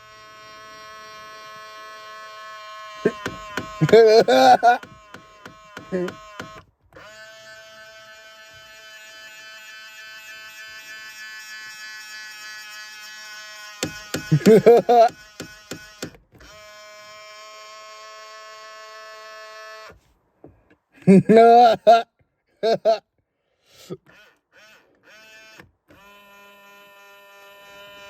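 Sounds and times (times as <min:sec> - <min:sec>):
mirror motor buzzing whine: 0:00.0 - 0:20.0, 0:24.0 - 0:28.0
person's loud voice: 0:21.1 - 0:22.0.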